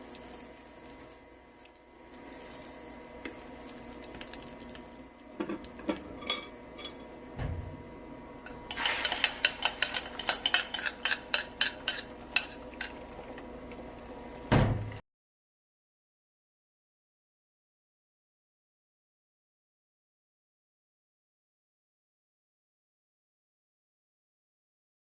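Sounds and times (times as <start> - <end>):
utensil clinking against bowl: 8.5 - 13.0.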